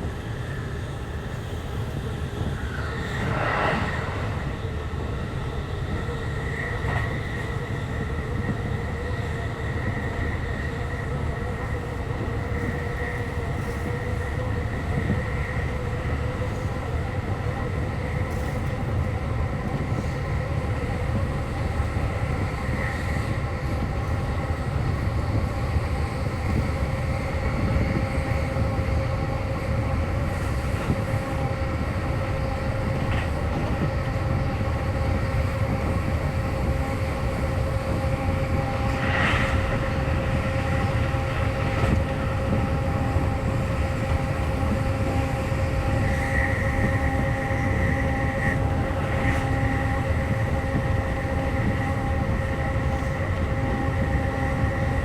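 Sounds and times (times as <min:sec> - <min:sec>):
train running rumble and whine: 0:00.0 - 0:55.0.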